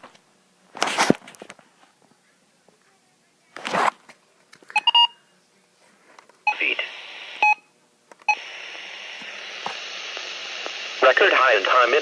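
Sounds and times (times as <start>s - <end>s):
broadcast static hiss: 0.0s - 12.0s
two-pitch radio beeps: 6.5s - 7.7s, 8.3s - 8.6s.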